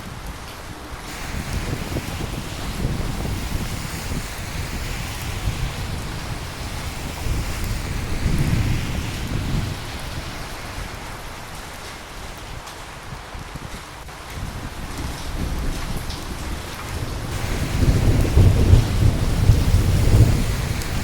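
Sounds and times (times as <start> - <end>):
steady rainfall: 0.0 - 21.0
low rumble of thunder: 14.4 - 21.0.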